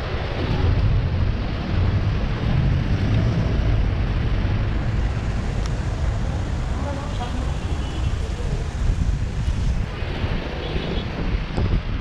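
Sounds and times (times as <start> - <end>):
road noise: 0.0 - 12.0
wind rumble on microphone: 0.0 - 12.0.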